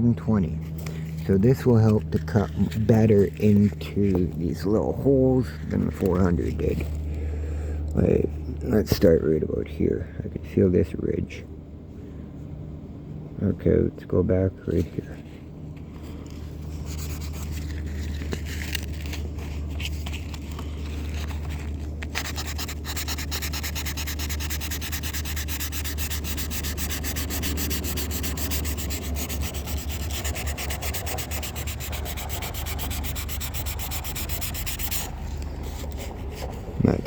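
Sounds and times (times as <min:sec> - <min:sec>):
steady low hum: 0:00.0 - 0:37.0
hand sanding strokes: 0:22.2 - 0:36.6.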